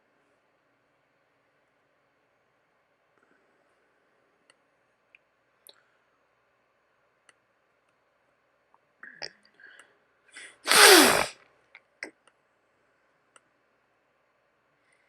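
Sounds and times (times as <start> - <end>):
person sneezing: 10.4 - 11.3.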